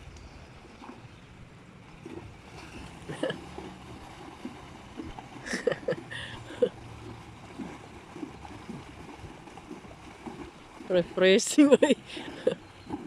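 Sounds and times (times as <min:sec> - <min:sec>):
river water flowing: 0:00.0 - 0:13.0.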